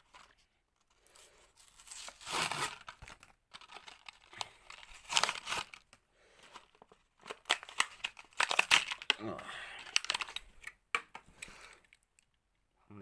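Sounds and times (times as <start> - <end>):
plastic blister crinkling: 0.0 - 12.0
card tearing: 1.6 - 6.0, 7.2 - 10.7.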